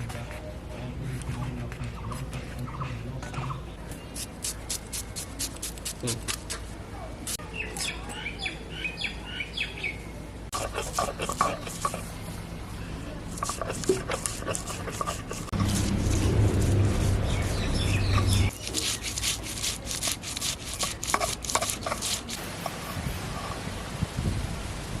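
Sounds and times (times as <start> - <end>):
birds chirping: 1.3 - 5.2, 7.4 - 13.2, 16.2 - 19.2
sharp scraping or clicking strokes: 10.5 - 12.1, 13.3 - 23.1.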